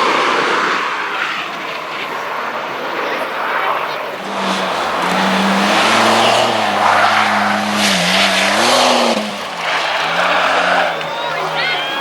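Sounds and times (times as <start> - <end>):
race car engine at high revs: 4.0 - 12.0.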